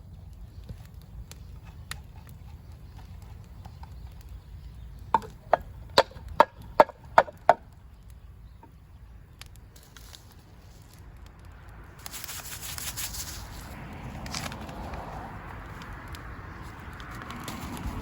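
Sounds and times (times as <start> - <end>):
tool striking wood: 5.2 - 7.6.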